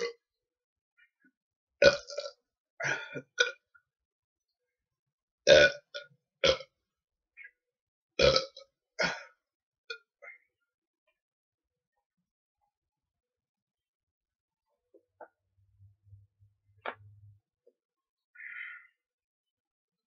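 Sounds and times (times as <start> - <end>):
person burping: 1.8 - 3.7, 5.5 - 6.8, 8.2 - 10.4.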